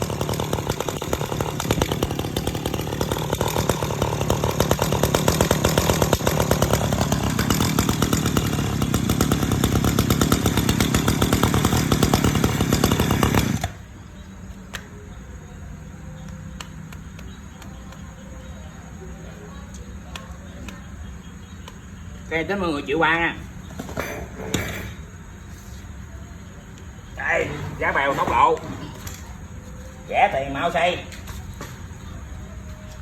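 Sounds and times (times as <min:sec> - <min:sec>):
two-stroke engine running hard: 0:00.0 - 0:13.9, 0:27.2 - 0:29.2.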